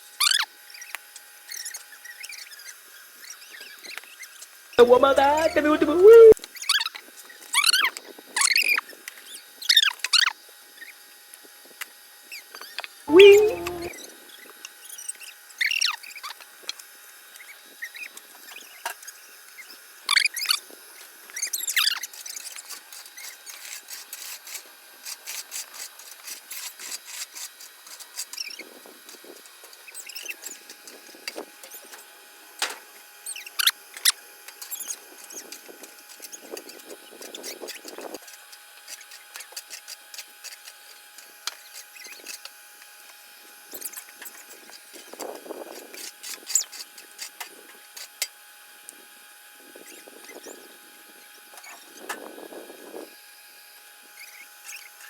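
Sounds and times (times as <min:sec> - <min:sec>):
faint steady high tone: 0:04.8 - 0:06.4, 0:13.1 - 0:13.9.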